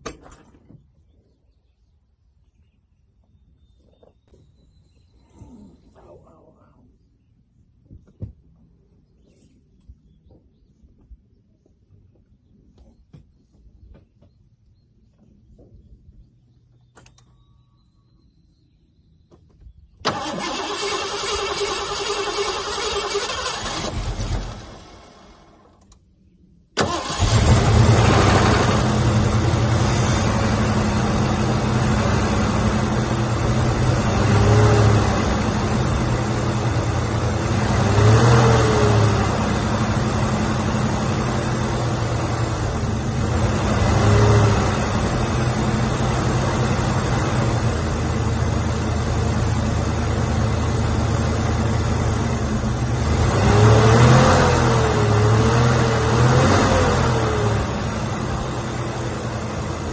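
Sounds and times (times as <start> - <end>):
bulldozer diesel engine running: 20.1 - 25.7, 26.8 - 59.9.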